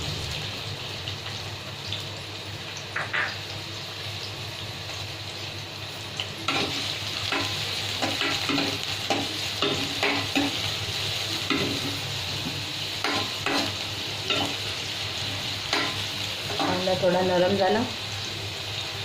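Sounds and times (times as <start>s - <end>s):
onion sizzling in hot oil: 0.0s - 19.0s.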